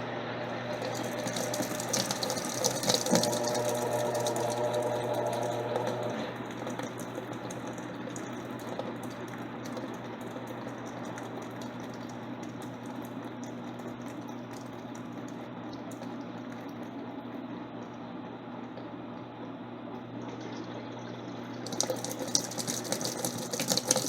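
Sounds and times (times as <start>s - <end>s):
washing machine churning water: 0.0s - 24.0s.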